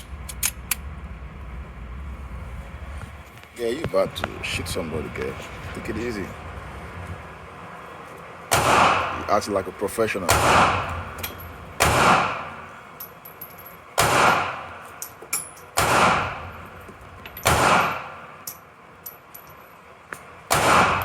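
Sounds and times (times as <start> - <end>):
handgun shots with echo: 8.5 - 9.3, 10.3 - 11.0, 11.8 - 12.7, 14.0 - 14.9, 15.8 - 16.5, 17.4 - 18.2, 20.5 - 21.0.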